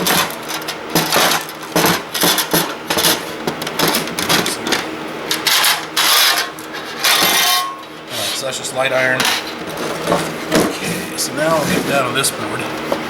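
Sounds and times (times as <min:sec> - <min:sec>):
metal parts clinking and rattling: 0:00.0 - 0:07.9.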